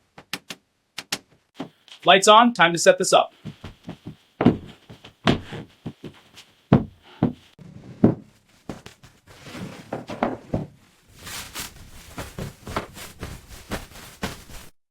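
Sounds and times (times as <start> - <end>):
irregular knocks and thumps: 3.5 - 9.1, 9.9 - 10.8.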